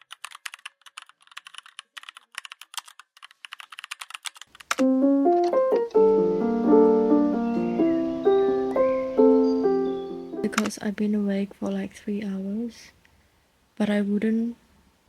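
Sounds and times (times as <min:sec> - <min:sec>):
keyboard typing: 0:00.0 - 0:06.0
electric piano music: 0:04.8 - 0:10.7
steady hiss: 0:05.9 - 0:10.4.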